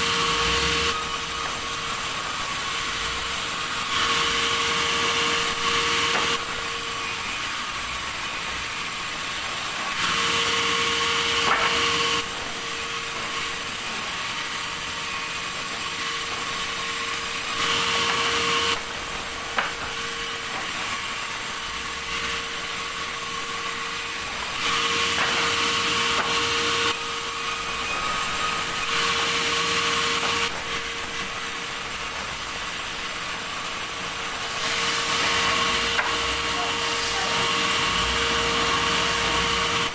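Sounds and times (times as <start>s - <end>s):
sawmill saw whining: 0.0s - 39.9s.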